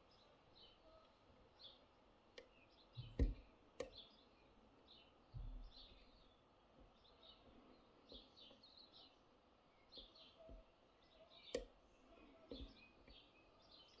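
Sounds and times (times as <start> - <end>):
faint bird chirps: 0.0 - 14.0.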